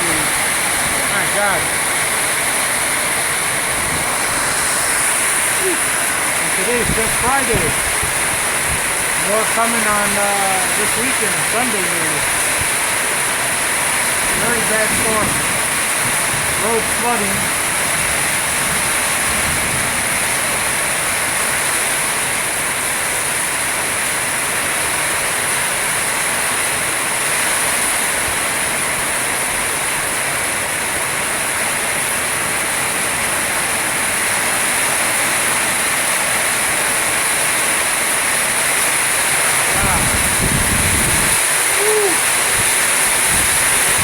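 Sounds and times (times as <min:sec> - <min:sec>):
strong wind: 0:00.0 - 0:22.6, 0:38.8 - 0:44.0
heavy rain pouring: 0:00.0 - 0:44.0.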